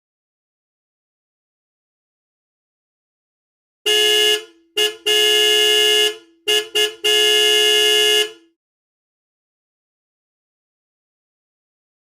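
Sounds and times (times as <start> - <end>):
car horn honking: 3.9 - 8.5.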